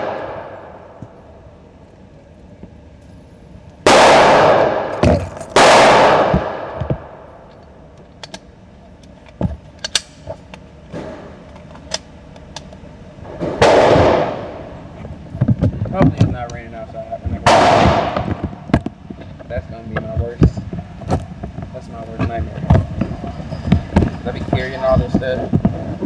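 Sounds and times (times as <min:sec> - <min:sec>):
gunshots with echo: 0:03.9 - 0:06.8.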